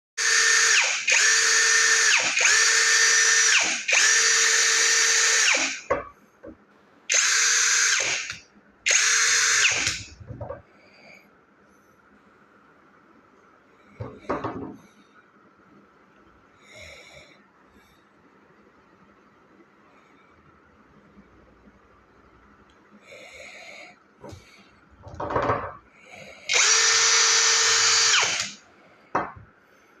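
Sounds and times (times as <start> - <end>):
cordless drill motor whine: 0.2 - 5.8, 7.1 - 10.1, 26.5 - 28.6.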